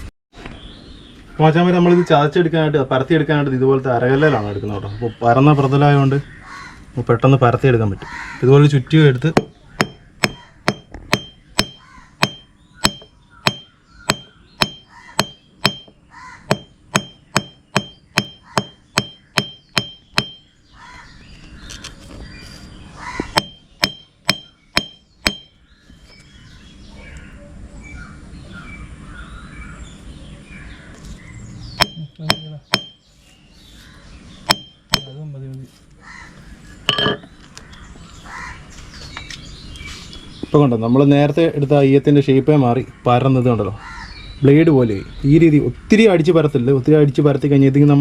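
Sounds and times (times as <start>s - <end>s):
hammer striking lead on stone: 9.3s - 20.5s, 23.2s - 25.6s, 31.8s - 33.0s, 34.5s - 35.2s, 36.9s - 37.3s.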